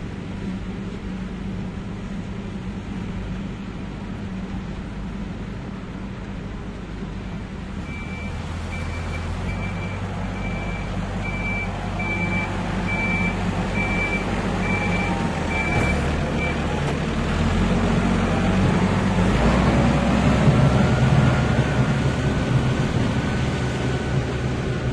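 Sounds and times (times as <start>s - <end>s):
tractor engine humming: 0.0s - 24.9s
reversing alarm beeping: 7.8s - 16.6s.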